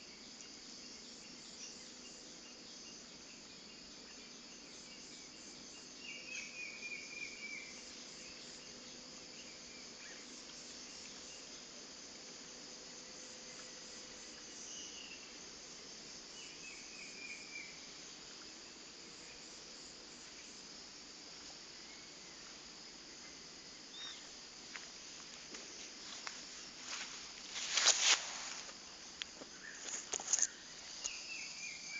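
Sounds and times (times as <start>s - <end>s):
crickets and insects chirring: 0.0s - 31.9s.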